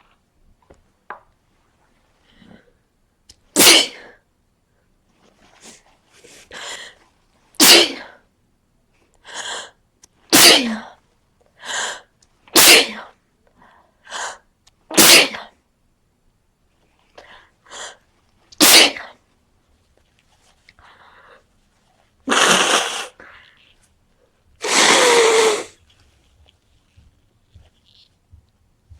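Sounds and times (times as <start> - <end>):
person sneezing: 3.6 - 4.1, 7.6 - 8.2, 10.3 - 10.9, 12.6 - 13.1, 14.9 - 15.5, 18.6 - 19.1, 22.3 - 23.3, 24.6 - 25.8
drawn-in breath: 24.6 - 25.8.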